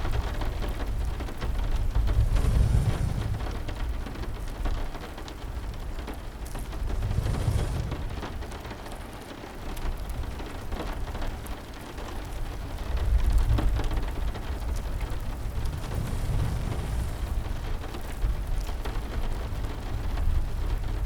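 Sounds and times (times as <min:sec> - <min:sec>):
steady rain: 0:00.0 - 0:21.0
fire crackling: 0:00.5 - 0:10.4, 0:12.2 - 0:20.8
low rumble: 0:01.8 - 0:04.0, 0:06.6 - 0:08.7, 0:15.0 - 0:18.7.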